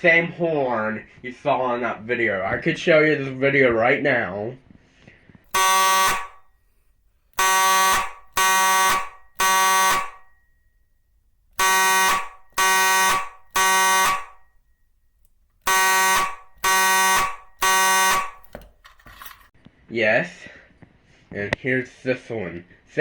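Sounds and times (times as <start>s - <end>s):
fire alarm horn blasts: 5.5s - 6.5s, 7.4s - 10.6s, 11.6s - 14.6s, 15.6s - 18.5s.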